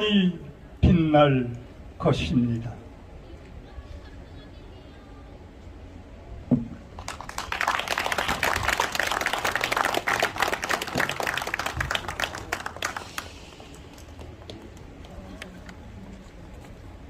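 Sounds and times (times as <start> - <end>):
single thump: 6.5 - 6.8
audience applauding: 7.0 - 15.8.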